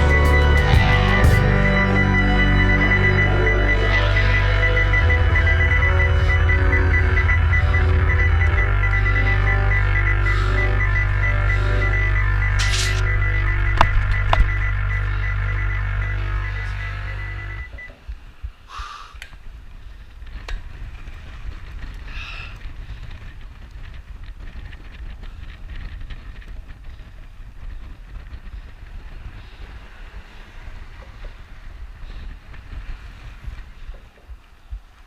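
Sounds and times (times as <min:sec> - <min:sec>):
sharp clicks: 0:12.5 - 0:13.2.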